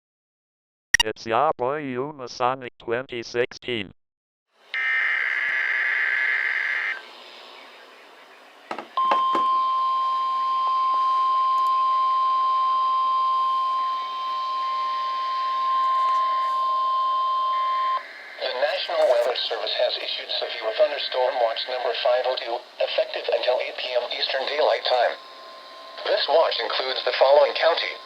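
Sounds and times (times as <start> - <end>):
long steady alert tone: 9.0 - 22.3, 24.1 - 28.0.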